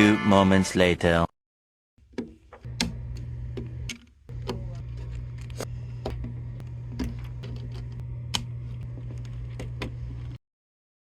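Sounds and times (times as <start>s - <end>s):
steady low hum: 2.5s - 10.4s.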